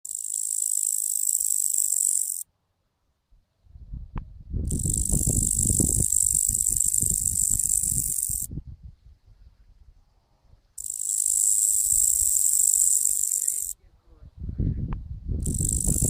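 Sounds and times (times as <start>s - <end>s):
locust buzzing: 0.1s - 2.4s, 4.7s - 8.5s, 10.8s - 13.8s, 15.4s - 16.0s.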